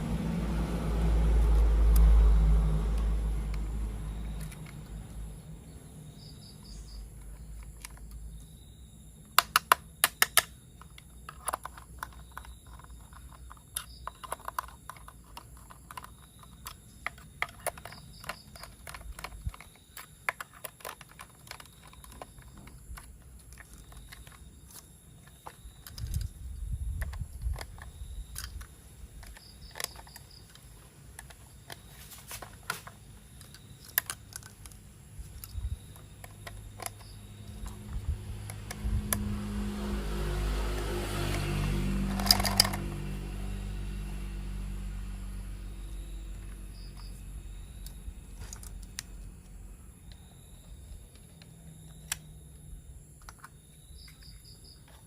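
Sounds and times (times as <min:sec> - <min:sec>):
plastic toy parts clicking: 0:09.4 - 0:26.4, 0:27.0 - 0:37.8, 0:42.1 - 0:43.0, 0:53.2 - 0:55.0.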